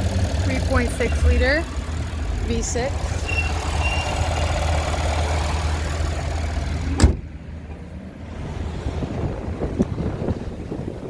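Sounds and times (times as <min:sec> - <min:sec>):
car engine idling: 0:00.0 - 0:08.3.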